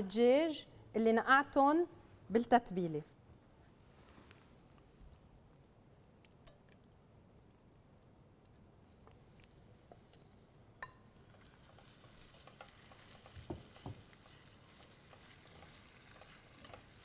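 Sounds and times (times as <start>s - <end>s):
chicken sizzling in oil: 10.1s - 17.0s.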